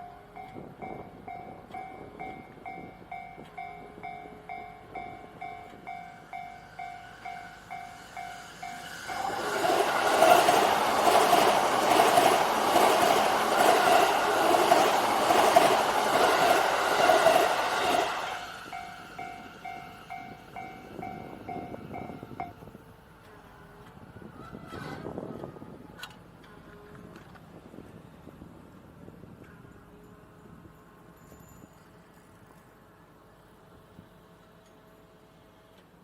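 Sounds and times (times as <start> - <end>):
level-crossing alarm bell: 0.0 - 22.4
electric train passing: 0.0 - 36.0.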